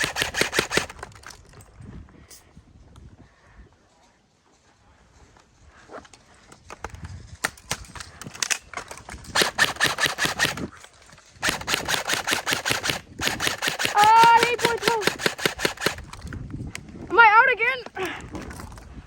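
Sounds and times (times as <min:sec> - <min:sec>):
airsoft guns firing: 0:00.0 - 0:01.0, 0:09.3 - 0:10.7, 0:11.4 - 0:16.0.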